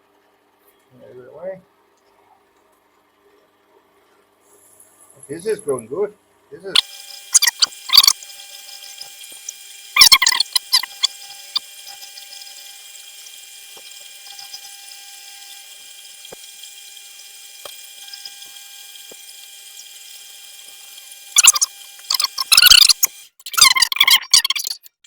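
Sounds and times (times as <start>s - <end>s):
lathe high whine: 6.8s - 23.4s.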